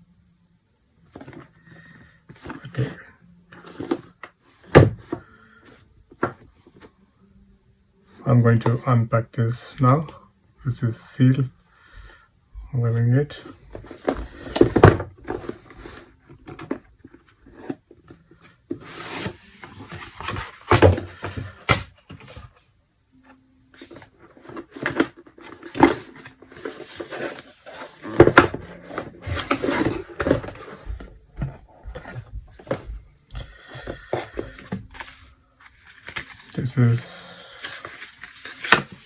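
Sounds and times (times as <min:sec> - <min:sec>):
box being unpacked by hand: 0:13.4 - 0:22.7, 0:23.8 - 0:39.0.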